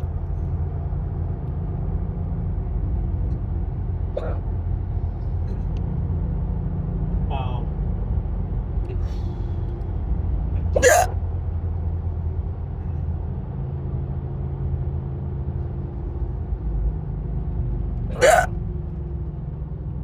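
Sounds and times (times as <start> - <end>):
woman hiccuping: 10.8 - 11.2, 18.1 - 18.5.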